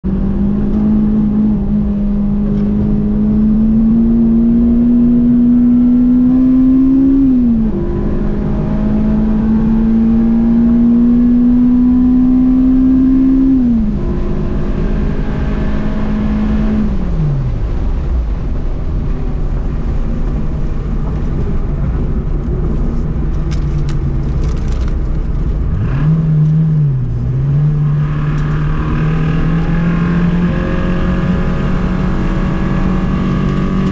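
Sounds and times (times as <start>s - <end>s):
car engine running hard: 0.0s - 33.9s.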